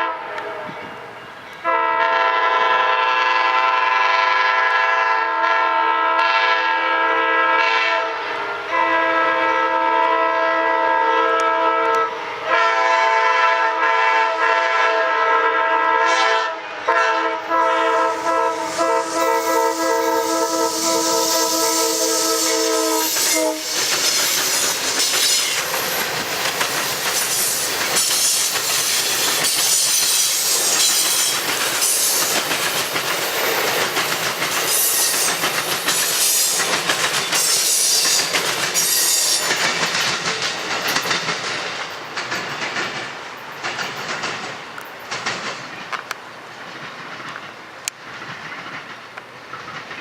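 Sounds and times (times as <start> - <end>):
train air horn chord: 0.0 - 0.8, 1.6 - 23.8
wheels clicking over rail joints: 23.0 - 50.0.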